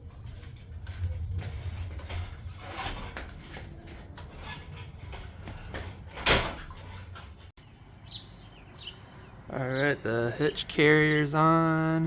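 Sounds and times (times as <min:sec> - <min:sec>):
metal knocks and rattles: 0:00.0 - 0:07.5.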